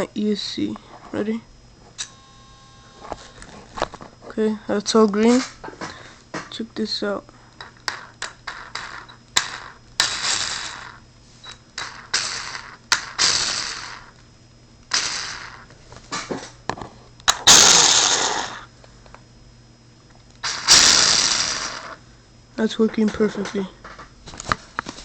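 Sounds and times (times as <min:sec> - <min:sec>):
electric motor spinning up: 0:08.7 - 0:11.0, 0:11.8 - 0:14.2, 0:14.9 - 0:15.7, 0:17.3 - 0:18.7, 0:20.4 - 0:22.0.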